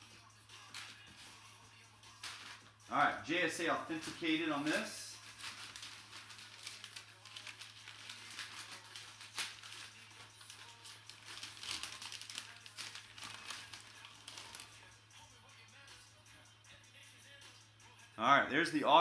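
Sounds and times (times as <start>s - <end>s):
plastic packaging crinkling: 2.2s - 2.6s, 3.9s - 14.8s.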